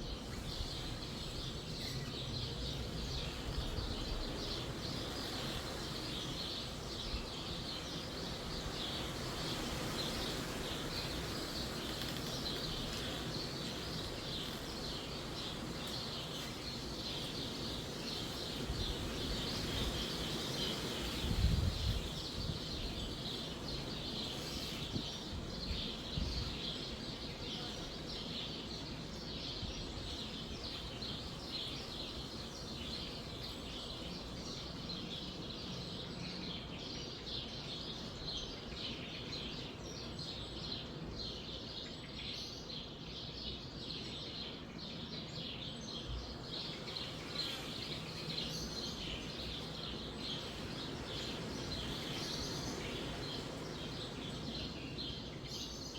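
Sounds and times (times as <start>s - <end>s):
small birds chirping: 0.0s - 55.9s
wind gusting: 21.1s - 23.1s.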